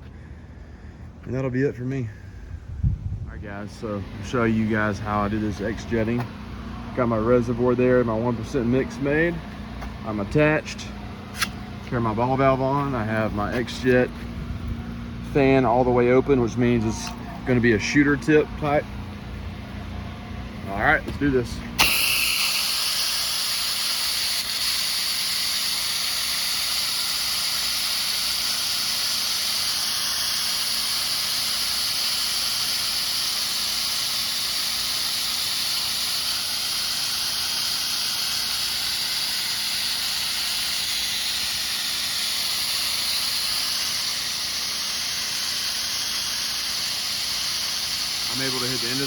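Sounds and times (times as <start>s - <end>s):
pressure washer spraying hiss: 21.8s - 49.0s.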